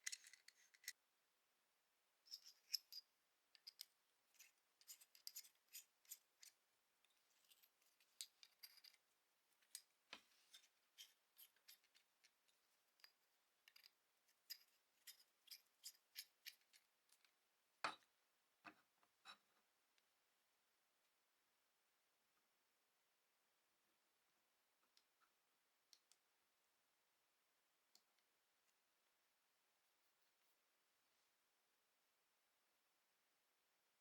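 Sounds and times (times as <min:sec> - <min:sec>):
light clicks and scrapes: 0:00.0 - 0:01.0, 0:03.6 - 0:09.0, 0:09.6 - 0:17.3.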